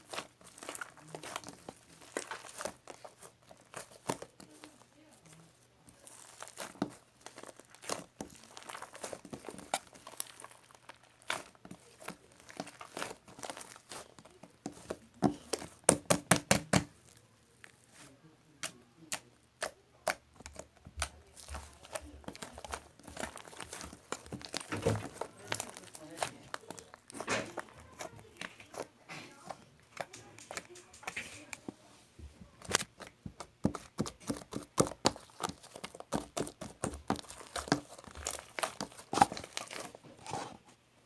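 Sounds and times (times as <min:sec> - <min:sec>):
objects crinkling and clicking: 0:00.0 - 0:40.8.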